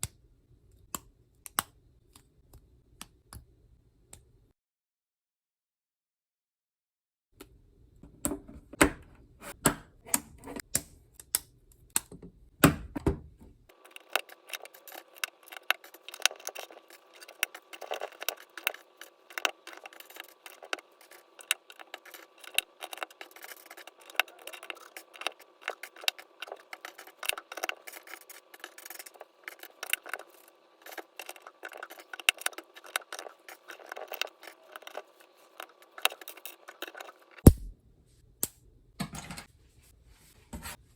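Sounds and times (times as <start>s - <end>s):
plastic pieces clicking and clattering: 13.7s - 37.4s.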